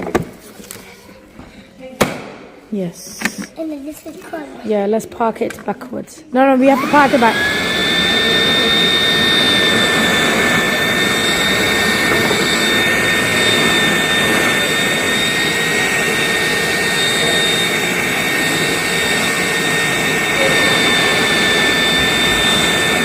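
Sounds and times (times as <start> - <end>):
vacuum cleaner running: 6.6 - 23.0.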